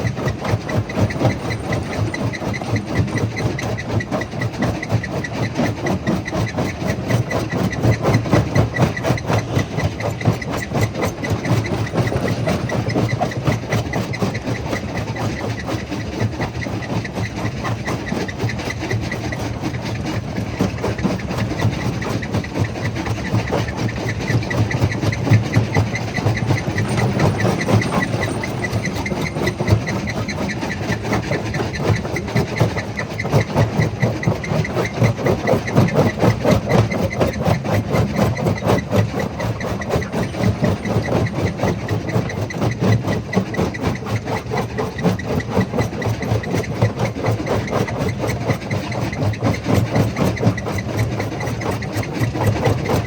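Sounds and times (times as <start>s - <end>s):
crusher machine running: 20.1s - 53.0s.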